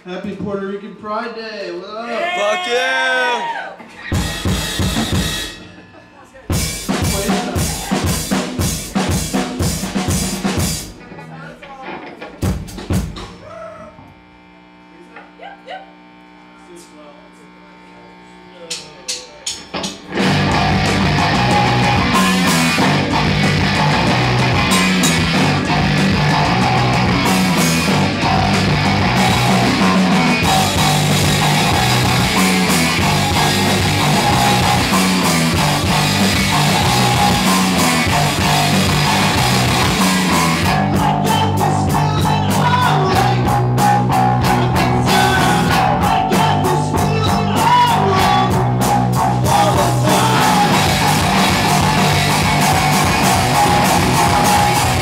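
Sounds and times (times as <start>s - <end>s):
electric guitar: 3.4s - 16.1s, 19.7s - 55.0s
live rock band playing: 3.8s - 13.4s, 19.7s - 55.0s
bass line: 4.0s - 11.1s, 20.1s - 55.0s.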